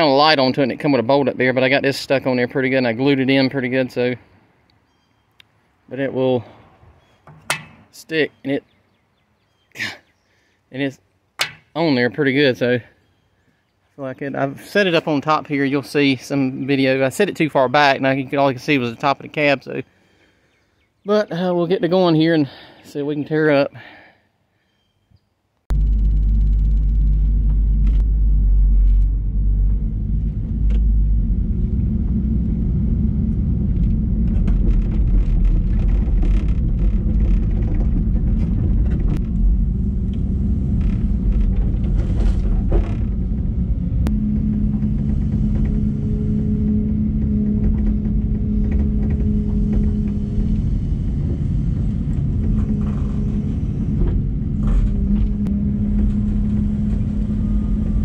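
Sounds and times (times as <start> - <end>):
bucket knocks and clanks: 7.3 - 7.9, 11.4 - 11.7
higher steady drone: 25.7 - 35.2
excavator diesel engine rumbling: 25.7 - 58.0.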